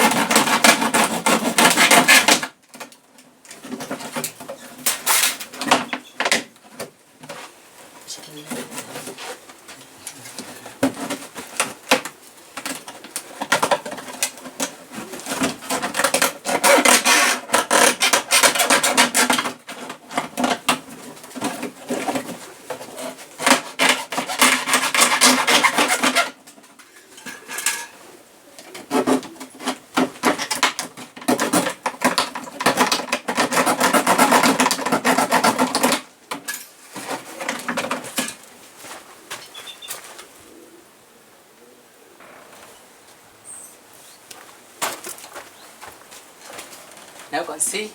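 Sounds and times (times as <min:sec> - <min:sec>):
blade sawing through plastic: 0:00.0 - 0:02.6, 0:13.4 - 0:20.6, 0:21.8 - 0:26.4, 0:28.8 - 0:36.1.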